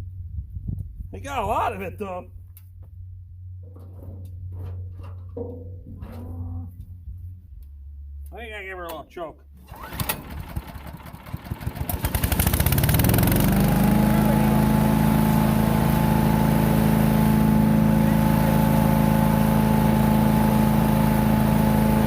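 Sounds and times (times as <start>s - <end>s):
small engine starting and running: 9.6s - 22.0s.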